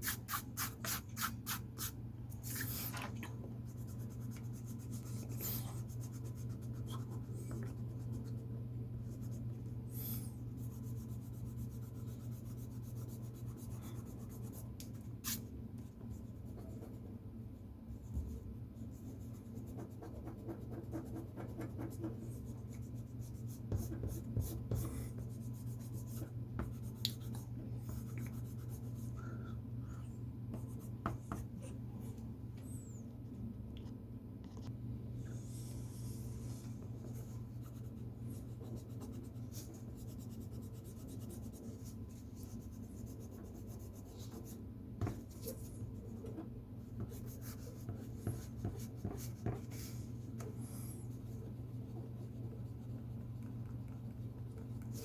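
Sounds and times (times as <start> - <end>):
steady low hum: 0.0 - 55.0
pencil scratching on paper: 18.8 - 29.1, 37.0 - 55.0.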